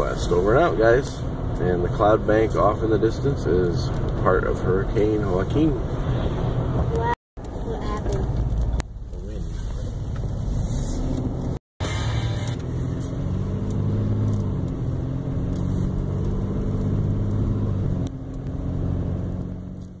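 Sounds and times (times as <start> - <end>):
vehicle engine running: 6.8 - 20.0.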